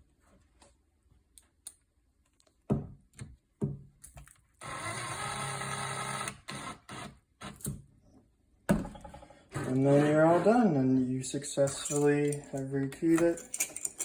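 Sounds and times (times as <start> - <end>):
cordless drill motor whine: 4.6 - 7.0
clicks and knocks of handled parts: 11.6 - 14.0.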